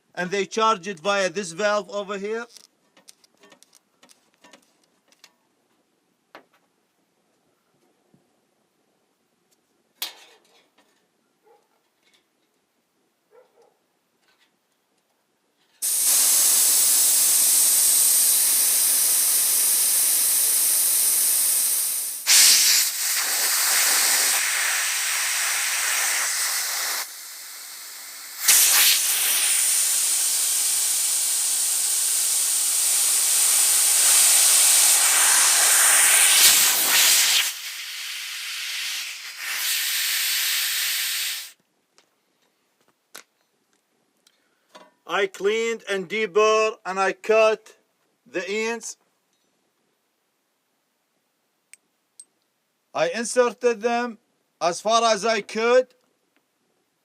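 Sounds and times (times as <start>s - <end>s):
gas hissing from valve: 15.8s - 41.6s.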